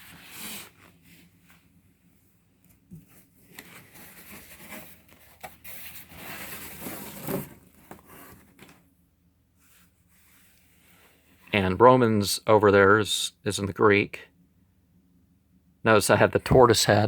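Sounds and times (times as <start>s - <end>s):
rustling handling noise: 0.0s - 8.9s.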